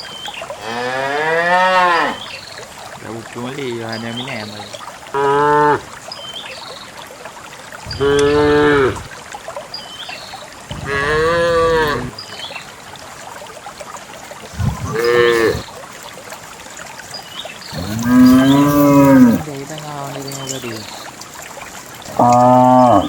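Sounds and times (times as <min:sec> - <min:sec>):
cows mooing: 0:00.6 - 0:02.2, 0:07.9 - 0:09.1, 0:10.7 - 0:12.1, 0:14.6 - 0:15.7, 0:17.7 - 0:19.5, 0:22.1 - 0:23.0.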